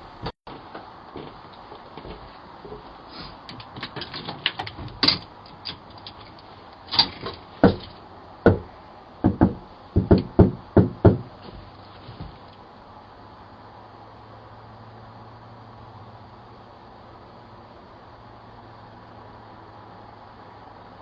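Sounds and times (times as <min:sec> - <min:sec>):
knocking on a door: 0:07.6 - 0:11.6.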